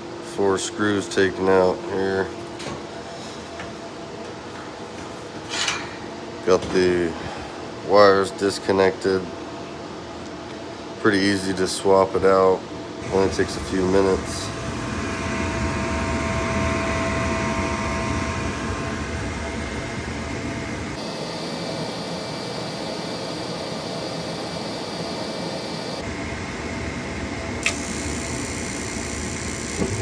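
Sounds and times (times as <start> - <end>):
blower motor whirring: 13.0 - 30.0.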